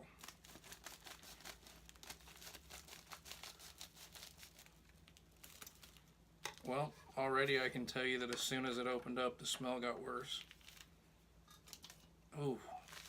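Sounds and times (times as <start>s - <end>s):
package wrapping tearing: 0.2s - 6.7s, 10.4s - 10.9s, 12.8s - 13.0s.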